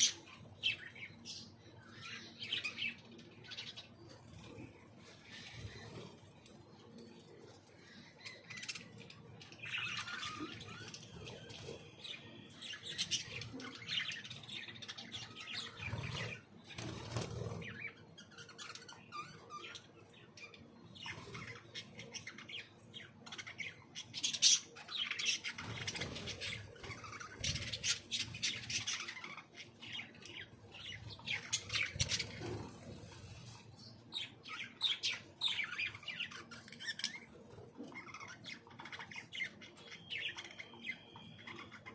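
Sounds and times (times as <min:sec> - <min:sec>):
birds chirping and squawking: 0:00.0 - 0:41.9.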